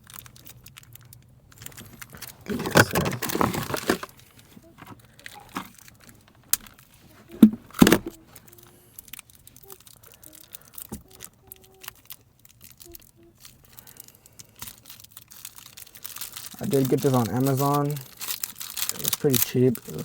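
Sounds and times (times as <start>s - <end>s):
packaging clicks: 0.0s - 20.0s
packaging rustling and tearing: 0.0s - 20.0s.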